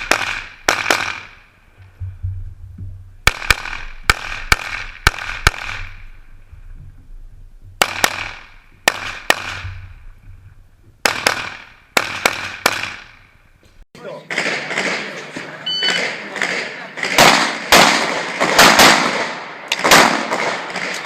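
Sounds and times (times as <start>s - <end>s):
pistol shots with echo: 0.0s - 1.5s, 3.2s - 6.0s, 7.8s - 9.8s, 11.0s - 13.2s, 14.2s - 15.2s, 15.9s - 21.0s.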